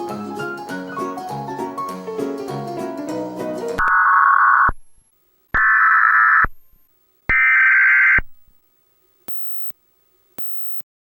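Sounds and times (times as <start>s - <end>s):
buzzing digital data tones: 3.8s - 4.8s, 5.6s - 8.4s, 9.3s - 9.8s, 10.4s - 10.8s.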